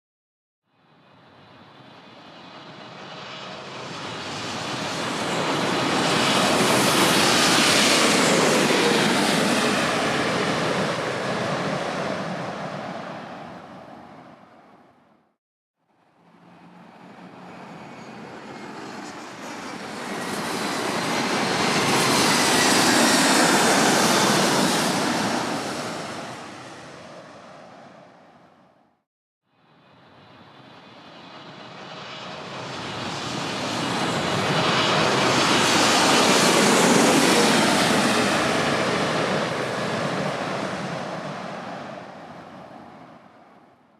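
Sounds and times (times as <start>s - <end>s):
jet airliner flying overhead: 0.8s - 15.3s, 16.1s - 29.0s, 29.6s - 43.9s.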